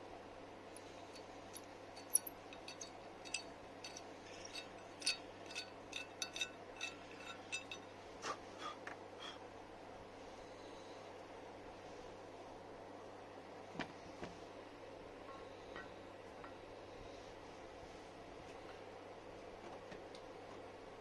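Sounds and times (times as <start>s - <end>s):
metal parts clinking: 0.8s - 7.9s.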